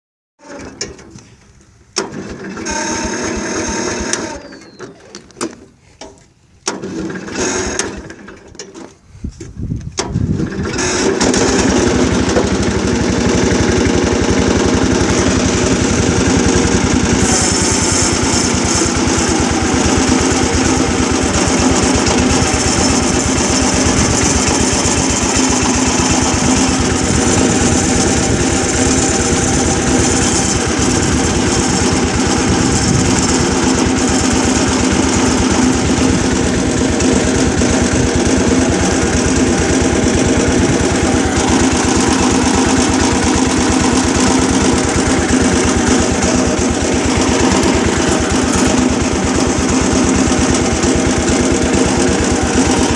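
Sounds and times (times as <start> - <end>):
engine cranking: 2.0 - 5.6, 10.0 - 52.9
engine idling: 10.8 - 52.9.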